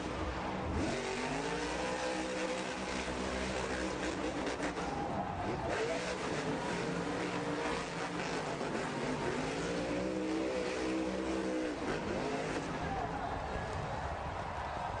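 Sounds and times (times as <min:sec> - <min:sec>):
truck engines revving: 0:00.0 - 0:15.0.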